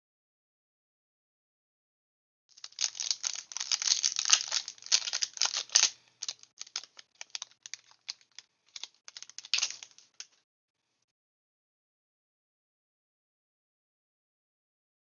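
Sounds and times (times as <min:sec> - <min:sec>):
foil wrapper crinkling and tearing: 0:02.6 - 0:10.2
handling clicks and rustles: 0:02.6 - 0:10.4.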